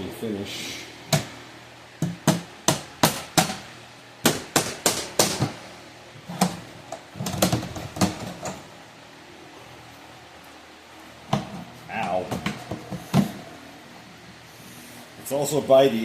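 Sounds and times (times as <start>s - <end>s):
hand tools clicking and knocking on metal: 6.3s - 8.6s.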